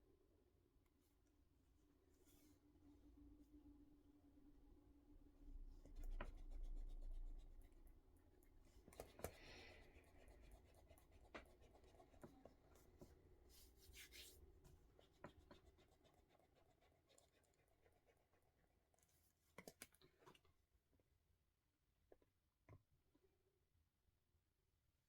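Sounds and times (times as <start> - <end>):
pen writing on paper: 9.0 - 12.5, 15.0 - 18.1.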